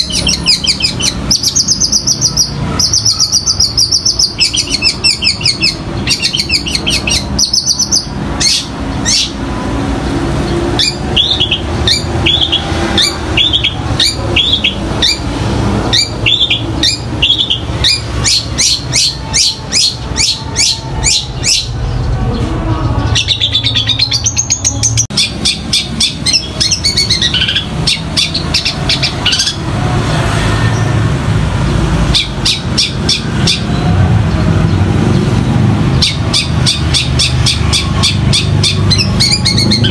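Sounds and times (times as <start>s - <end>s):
bird singing sharp chips and trills: 0.0s - 9.4s, 10.8s - 15.3s, 35.9s - 39.9s.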